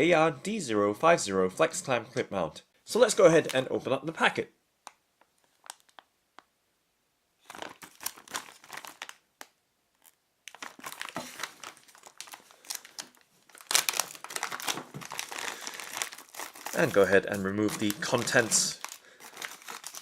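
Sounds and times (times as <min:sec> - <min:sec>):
packaging crinkling and rustling: 0:05.2 - 0:06.5, 0:07.4 - 0:20.0.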